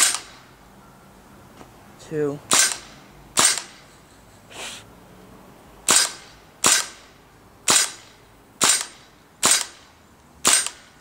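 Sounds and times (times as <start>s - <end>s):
airsoft rifle shots: 0.0s - 0.4s, 2.5s - 3.8s, 5.8s - 11.0s
soft puff of noise: 4.5s - 4.9s.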